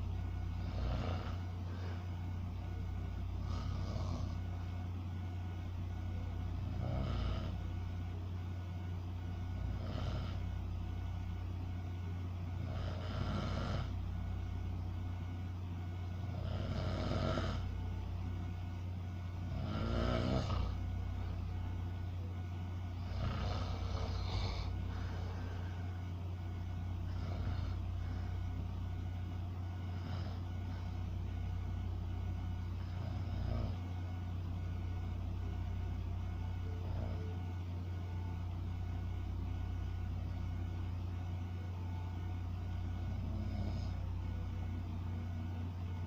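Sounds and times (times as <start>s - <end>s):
steady low hum: 0.0s - 46.0s
person snoring: 0.5s - 2.1s, 3.4s - 4.6s, 6.6s - 7.6s, 9.5s - 10.5s, 12.6s - 14.0s, 16.2s - 17.7s, 19.4s - 21.5s, 23.0s - 26.0s, 27.0s - 28.6s, 29.8s - 31.0s, 32.6s - 33.9s, 36.7s - 37.4s, 43.0s - 44.1s.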